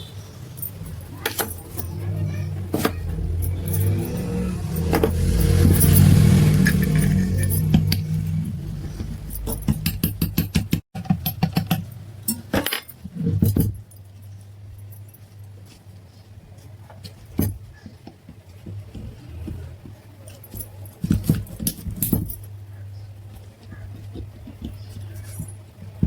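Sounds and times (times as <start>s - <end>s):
faint low hum: 0.0s - 10.5s
metal parts clinking and rattling: 0.5s - 10.6s, 20.3s - 22.5s.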